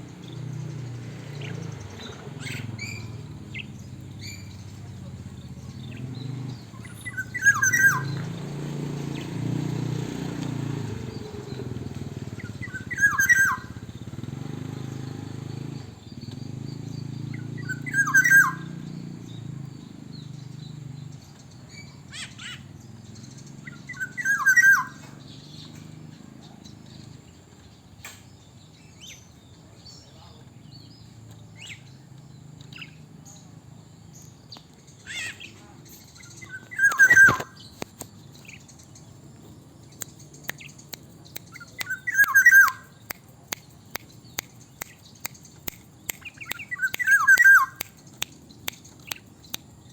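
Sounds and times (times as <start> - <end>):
bird whistling fluting phrase: 7.0 - 8.2, 12.6 - 13.8, 17.6 - 18.8, 24.0 - 25.0, 36.4 - 37.6, 41.5 - 42.8, 46.2 - 47.8.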